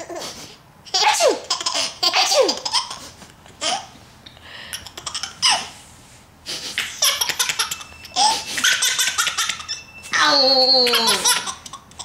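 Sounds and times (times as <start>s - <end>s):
young child laughing: 10.8s - 12.0s.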